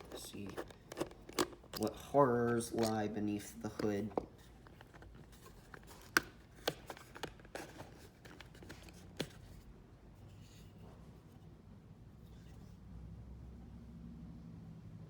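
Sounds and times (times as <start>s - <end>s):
screwdriver clicks and scrapes on plastic: 0.0s - 9.4s.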